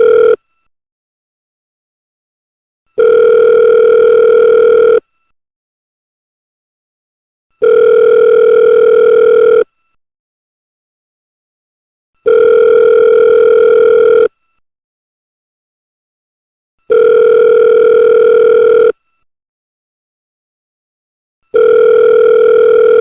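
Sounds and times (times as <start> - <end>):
telephone ringback tone: 0.0 - 0.4, 3.0 - 5.0, 7.6 - 9.7, 12.2 - 14.3, 16.9 - 19.0, 21.5 - 23.0.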